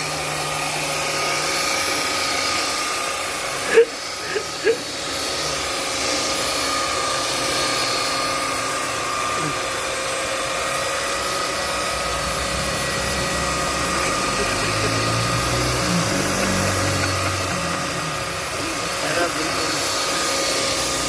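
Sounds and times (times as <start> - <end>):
electric sander on wood: 0.0 - 21.0
low rumble: 12.2 - 14.3.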